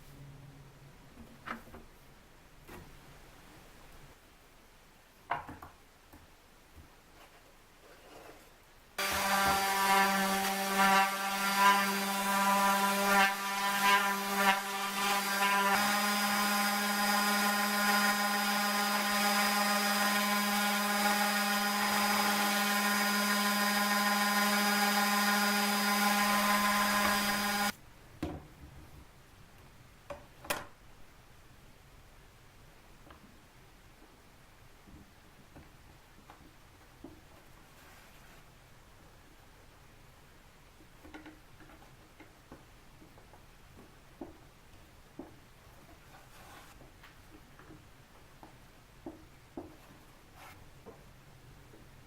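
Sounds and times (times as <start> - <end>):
scroll saw cutting wood: 9.0 - 27.8.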